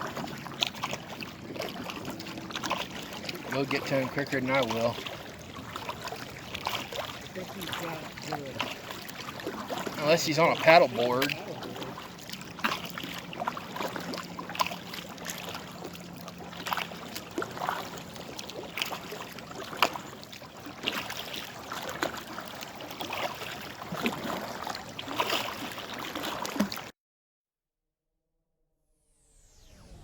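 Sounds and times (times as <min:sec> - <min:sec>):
paddle splashing water: 0:00.0 - 0:26.9
water lapping: 0:00.0 - 0:26.9.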